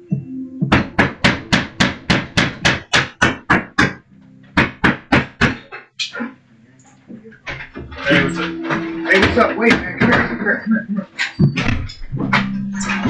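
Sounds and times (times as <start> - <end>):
loud banging on hard surface: 0.6 - 4.0.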